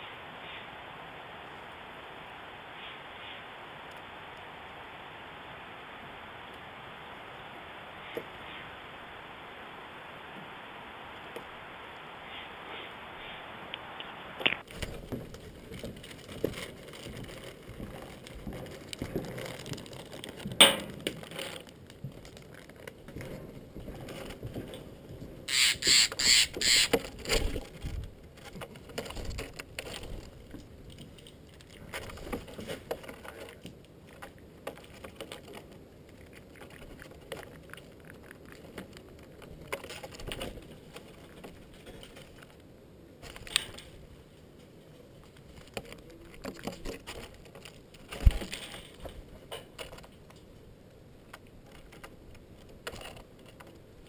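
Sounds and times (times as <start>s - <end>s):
jay harsh calls: 25.5s - 27.0s.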